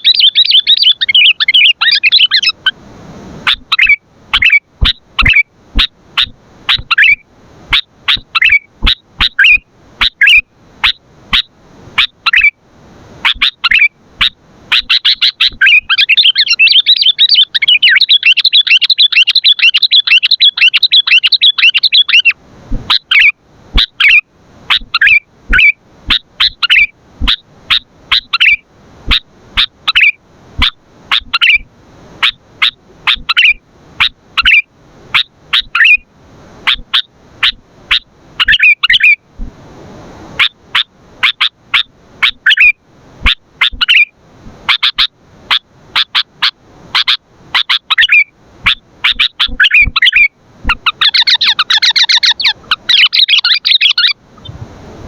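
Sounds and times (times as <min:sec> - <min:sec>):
bird rapid chattering: 0:00.0 - 0:02.6, 0:03.5 - 0:10.4, 0:13.3 - 0:31.6, 0:32.2 - 0:34.6, 0:35.5 - 0:36.0, 0:36.7 - 0:39.2, 0:43.6 - 0:44.1, 0:47.0 - 0:54.2
bird calling sharp notes: 0:00.0 - 0:02.8, 0:03.4 - 0:12.6, 0:13.2 - 0:39.2, 0:40.4 - 0:44.1, 0:44.7 - 0:54.6.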